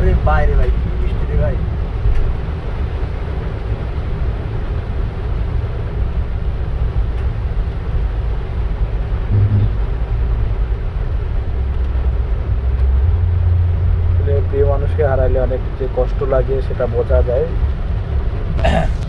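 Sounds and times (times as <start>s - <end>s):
car driving rumble inside cabin: 9.3s - 10.1s, 11.1s - 17.8s
low hum: 9.3s - 10.2s.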